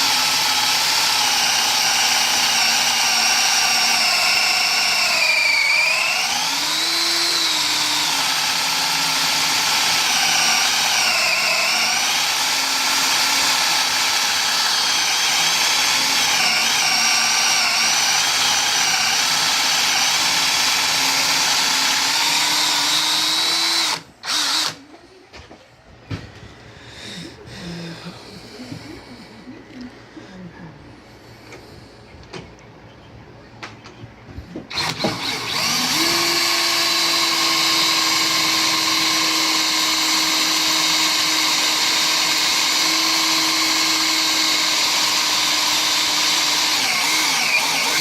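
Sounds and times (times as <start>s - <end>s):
electric drill motor whine: 0.0s - 24.8s, 34.6s - 48.0s.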